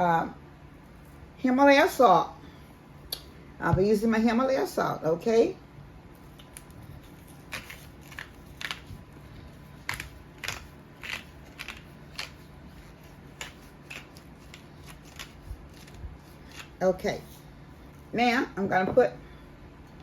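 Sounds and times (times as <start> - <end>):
salt grinder crunching: 6.4 - 16.8.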